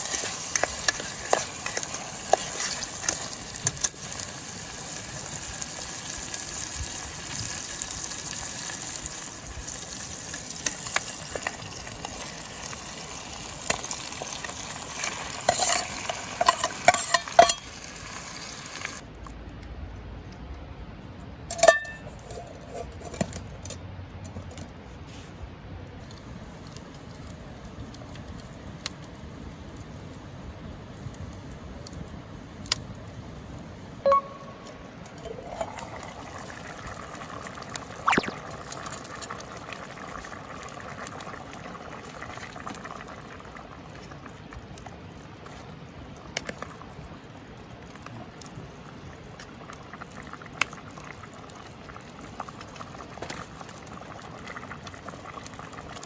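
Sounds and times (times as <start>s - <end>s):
food sizzling in a pan: 0.0s - 19.0s.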